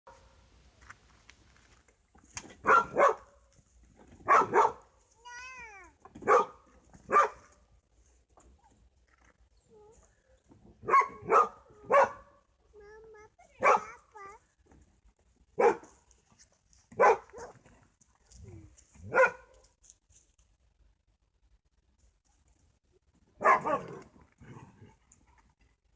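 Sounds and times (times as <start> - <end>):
dogs barking: 2.6 - 3.3, 4.2 - 4.8, 6.2 - 7.5, 10.8 - 12.4, 13.6 - 14.0, 15.6 - 16.0, 17.0 - 17.6, 19.1 - 19.5, 23.4 - 24.0.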